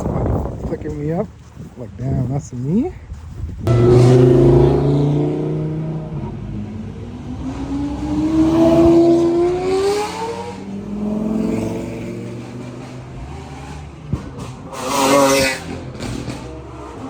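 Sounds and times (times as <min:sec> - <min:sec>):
car engine accelerating: 0:03.7 - 0:17.0.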